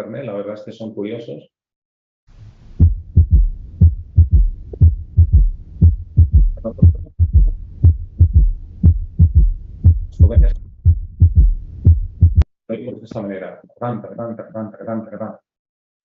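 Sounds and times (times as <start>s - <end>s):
heartbeat thumps: 2.8s - 12.5s.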